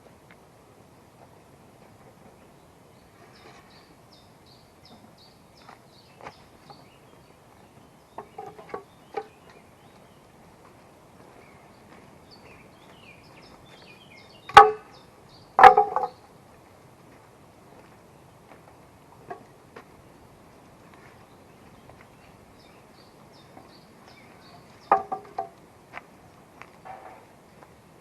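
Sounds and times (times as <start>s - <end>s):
small bird singing: 2.4s - 10.4s, 11.3s - 16.4s, 21.0s - 25.4s
wood knocking on wood: 8.2s - 9.3s, 15.6s - 16.2s, 24.8s - 25.6s
loud sharp wooden blows: 14.5s - 14.9s, 15.6s - 16.2s, 24.8s - 25.6s.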